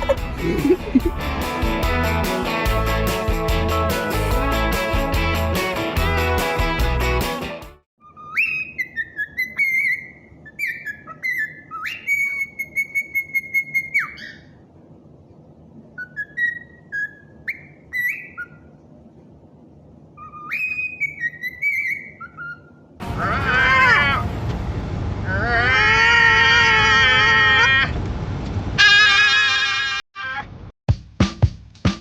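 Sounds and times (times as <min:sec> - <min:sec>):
bird whistling a tune: 0:08.0 - 0:14.4, 0:16.0 - 0:18.6, 0:20.2 - 0:22.8
loud wavering sound: 0:23.0 - 0:26.4.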